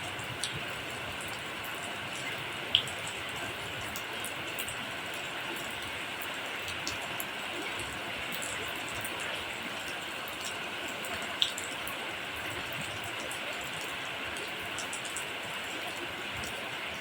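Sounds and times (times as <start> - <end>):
steady rainfall: 0.0 - 17.0
raindrops ticking: 13.0 - 15.3.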